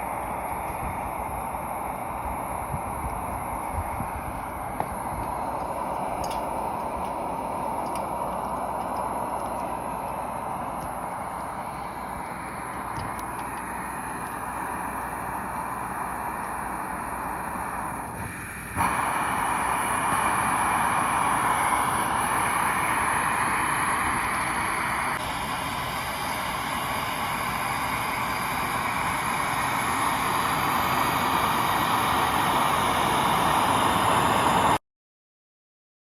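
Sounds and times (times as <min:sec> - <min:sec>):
pressure burner rushing: 0:00.0 - 0:34.8.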